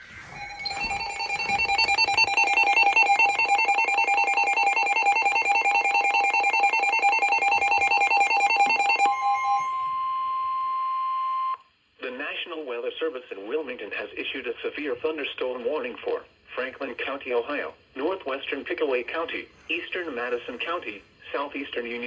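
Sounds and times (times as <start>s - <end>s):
steady warning alarm tone: 0.2s - 11.6s.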